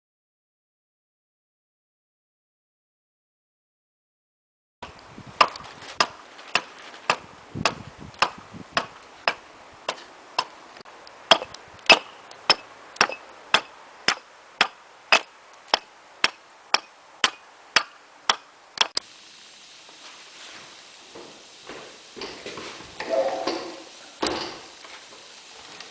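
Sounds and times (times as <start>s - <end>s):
sharp knocks: 5.4s - 10.5s.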